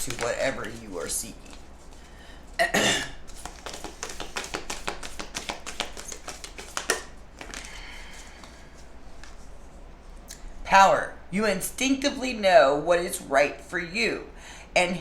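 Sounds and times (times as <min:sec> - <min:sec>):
cards being shuffled: 0:00.0 - 0:02.1, 0:03.2 - 0:08.6
cards slapping: 0:00.0 - 0:02.1, 0:03.2 - 0:08.6.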